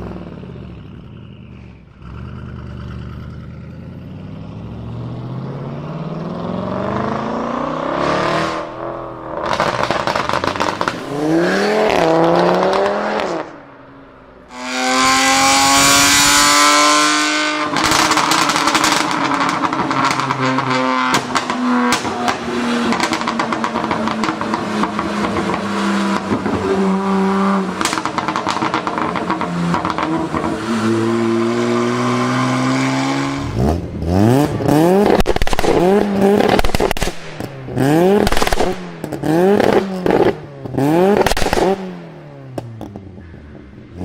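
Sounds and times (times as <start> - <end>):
car engines revving: 0.0 - 44.0
exhaust pops and crackles: 9.4 - 11.1, 17.6 - 26.7, 27.7 - 30.5, 35.0 - 41.8.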